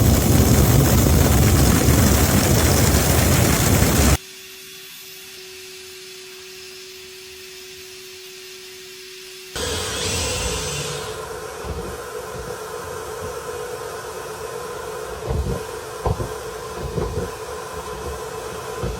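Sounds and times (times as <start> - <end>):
clothes dryer running: 0.0 - 4.2, 9.6 - 18.9
low thumps in dryer: 15.2 - 18.9.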